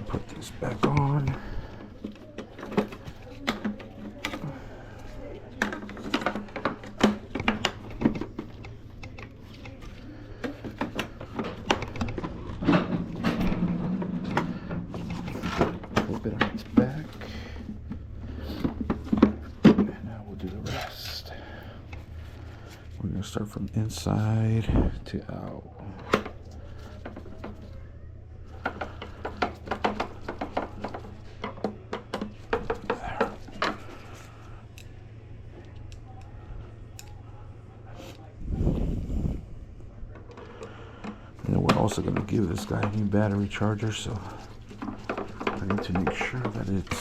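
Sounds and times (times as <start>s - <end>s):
hard parts clicking and knocking: 0.0s - 22.7s, 25.9s - 27.8s, 28.4s - 37.2s, 40.1s - 47.0s
low hum: 0.0s - 47.0s
tools and parts clicking: 36.9s - 37.2s.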